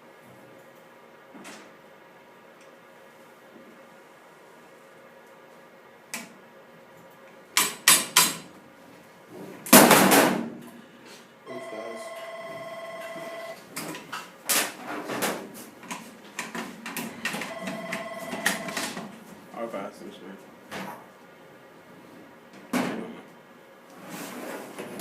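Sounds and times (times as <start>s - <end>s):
telephone ringing: 11.5s - 13.6s, 17.3s - 19.0s.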